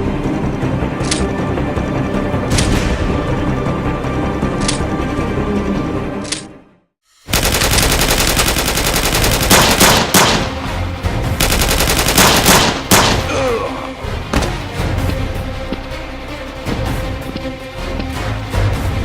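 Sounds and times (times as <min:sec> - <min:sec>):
machine-gun fire: 0:07.3 - 0:10.6, 0:11.4 - 0:13.3
single gunshots: 0:09.3 - 0:10.6, 0:11.5 - 0:13.3.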